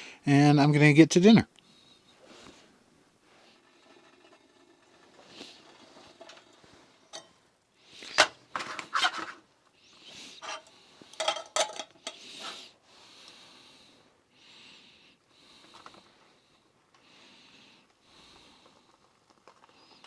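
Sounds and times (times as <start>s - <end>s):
cooking gear clattering: 3.5s - 7.4s, 8.0s - 9.4s, 10.4s - 12.5s.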